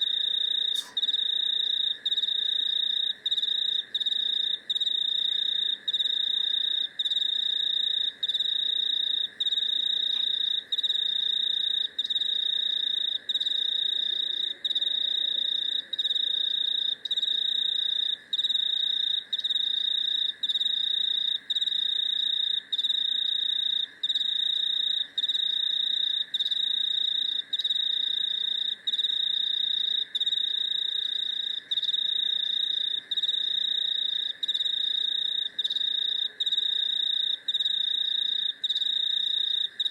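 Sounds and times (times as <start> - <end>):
cricket trilling: 0.0 - 39.9
low buzz of insects: 0.0 - 39.9.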